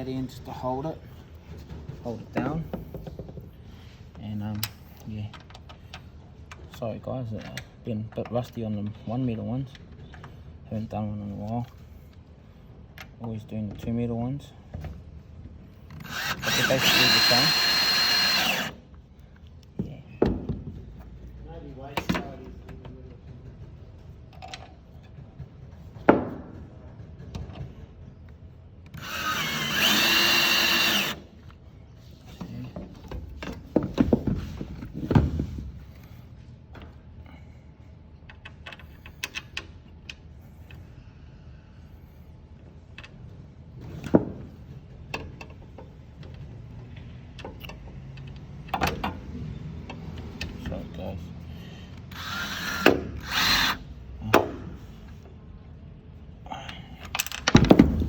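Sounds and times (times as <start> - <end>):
power drill whining: 15.9 - 18.8, 29.0 - 31.3, 52.1 - 53.9.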